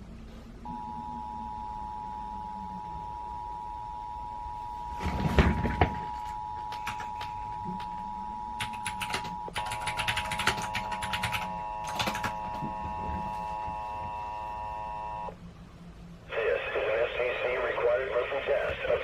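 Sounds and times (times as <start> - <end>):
rapid sharp clicks: 8.6 - 12.4.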